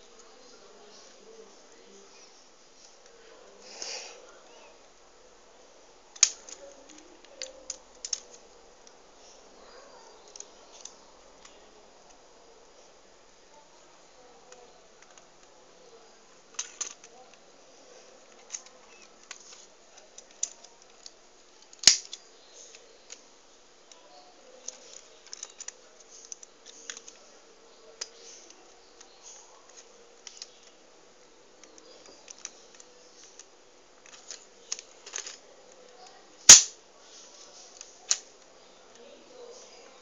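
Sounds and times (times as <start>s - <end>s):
plastic toy pistol clicking and rattling: 6.1s - 8.4s, 16.5s - 17.1s, 18.3s - 22.2s, 24.6s - 27.2s, 36.5s - 36.8s
sharp plastic snaps: 6.1s - 9.0s, 18.3s - 23.2s, 28.0s - 30.8s, 36.5s - 36.8s.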